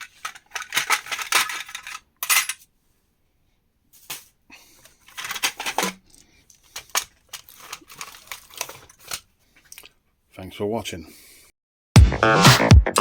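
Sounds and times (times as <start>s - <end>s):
small metal hardware clinking: 0.8s - 2.6s.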